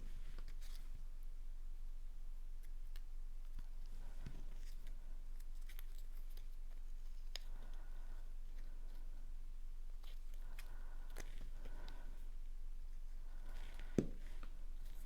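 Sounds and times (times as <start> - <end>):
soft thump: 14.0 - 14.2.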